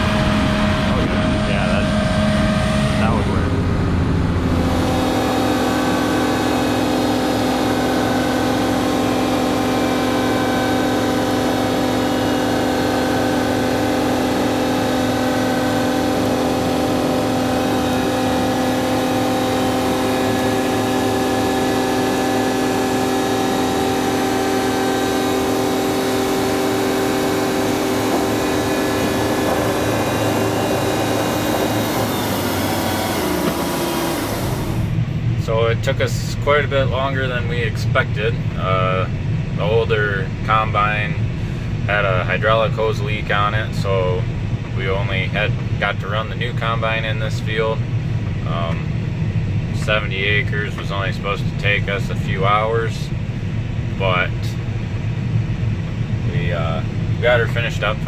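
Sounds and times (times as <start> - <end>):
machine motor hum: 0.0 - 35.4
steady whine: 0.0 - 58.0.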